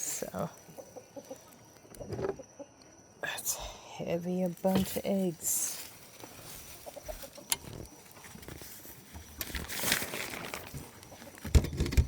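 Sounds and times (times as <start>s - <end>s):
knocks and thumps: 2.0s - 2.4s.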